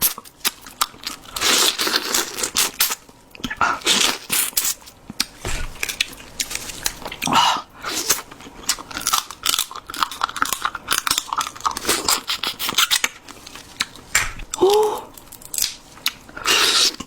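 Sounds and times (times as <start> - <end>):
chewing crunchy shell: 0.0 - 17.0.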